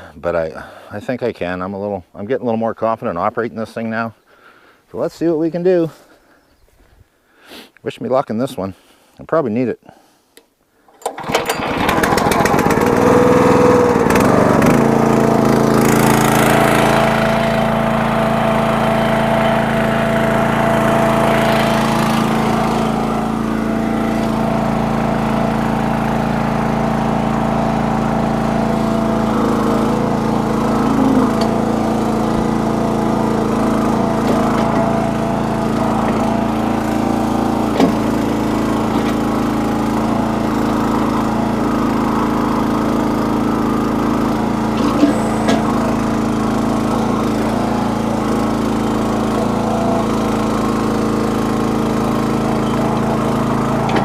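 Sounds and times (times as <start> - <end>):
small engine running steadily: 11.1 - 54.0.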